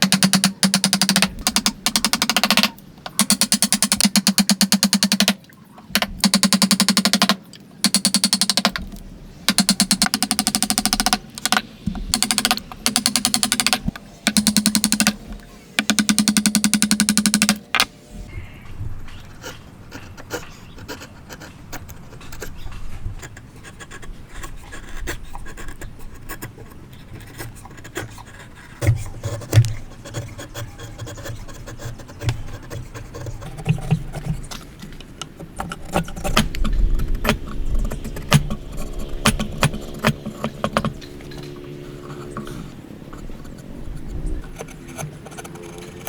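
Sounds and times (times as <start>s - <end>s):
tools tapping and scraping timber: 0.0s - 18.0s, 27.0s - 46.0s
steady hum: 7.7s - 20.0s, 30.7s - 46.0s.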